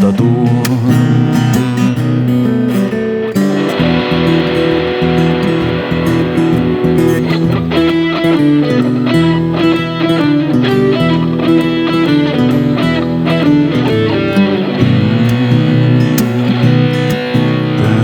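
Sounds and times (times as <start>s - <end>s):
guitar-led instrumental music: 0.0s - 18.0s.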